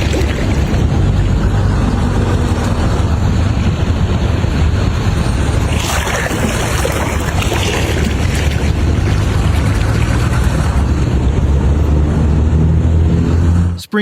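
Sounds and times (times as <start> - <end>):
water splash: 0.0 - 1.4, 5.5 - 11.0
floodwater rushing: 0.0 - 2.5, 5.0 - 11.4
wind buffeting microphone: 0.0 - 13.3.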